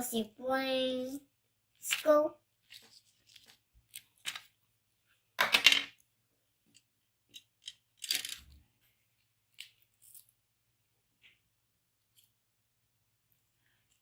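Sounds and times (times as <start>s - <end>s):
plastic pieces clattering on table: 1.9s - 4.6s, 5.4s - 6.0s, 7.3s - 8.6s.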